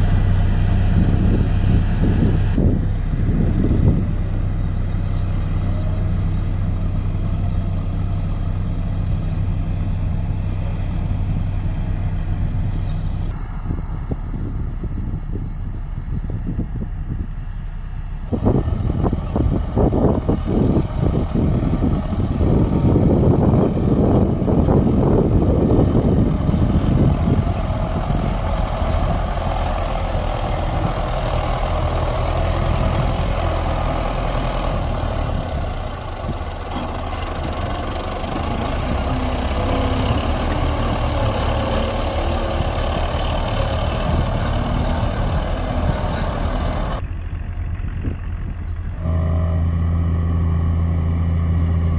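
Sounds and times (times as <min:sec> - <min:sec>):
diesel engine drone with whine: 0:00.0 - 0:51.9
diesel machine clattering: 0:14.2 - 0:51.9.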